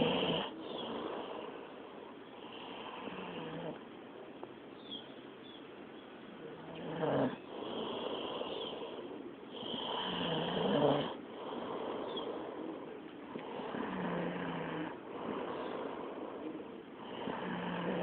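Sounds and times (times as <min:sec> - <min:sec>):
man snoring: 0:00.0 - 0:01.6, 0:02.5 - 0:03.8, 0:06.6 - 0:12.6, 0:13.3 - 0:18.0.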